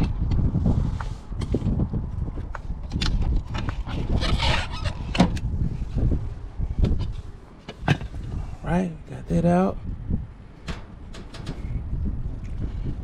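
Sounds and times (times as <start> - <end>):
low rumble: 9.8 - 13.0.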